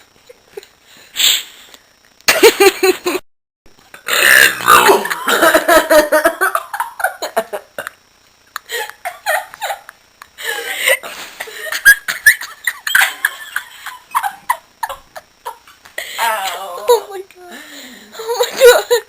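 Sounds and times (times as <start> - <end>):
giggling laughter: 2.3 - 3.2, 4.7 - 8.0, 8.6 - 15.8, 18.1 - 19.0.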